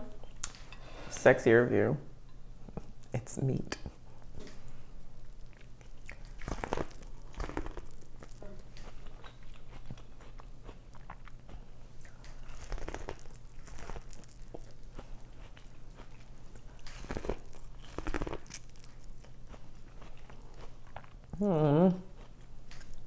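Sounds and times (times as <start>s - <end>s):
low steady hum: 0.0s - 23.0s
person chewing and biting food: 4.0s - 21.4s, 22.1s - 23.0s.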